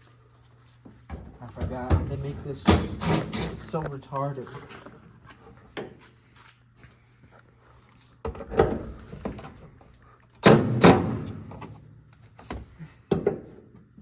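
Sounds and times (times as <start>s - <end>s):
knocks and thumps of tools: 1.1s - 3.7s, 12.4s - 13.7s.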